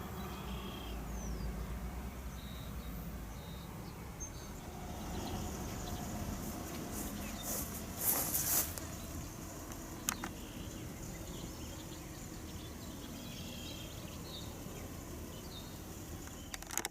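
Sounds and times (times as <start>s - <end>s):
outdoor background noise: 0.0s - 16.9s
brief rustle: 6.8s - 8.9s.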